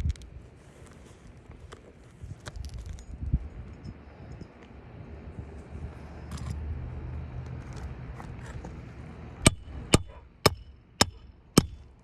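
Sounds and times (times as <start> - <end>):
wind rumble on microphone: 0.0 - 9.0
hammer strikes: 9.4 - 11.9.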